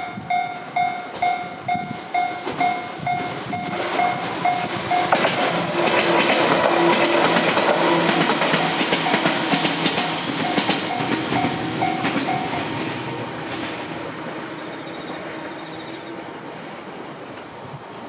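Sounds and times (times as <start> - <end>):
crossing warning bell ding: 0.0 - 13.3
train wheels clacking over rail joints: 2.2 - 17.6.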